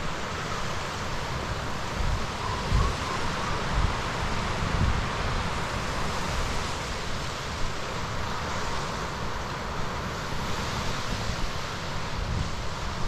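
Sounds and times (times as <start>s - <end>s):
wind buffeting microphone: 1.4s - 6.8s.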